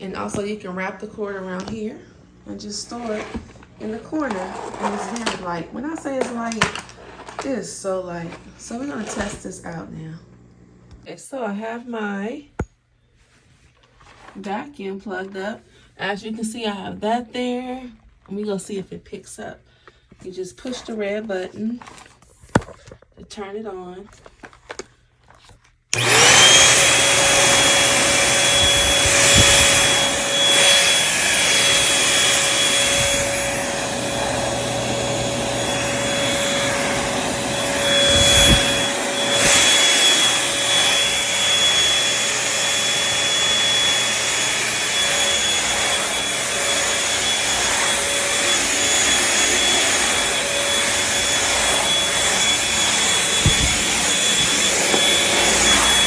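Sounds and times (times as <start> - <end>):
vacuum cleaner motor whining: 0.0 - 11.0, 25.9 - 56.0.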